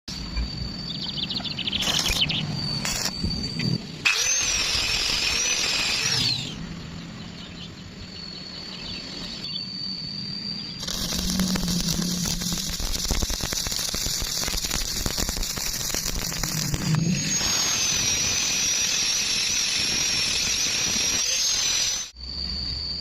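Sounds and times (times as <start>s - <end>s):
power tool whine: 1.8s - 6.6s, 10.7s - 22.2s
dense crackle: 2.8s - 3.3s, 10.8s - 22.1s.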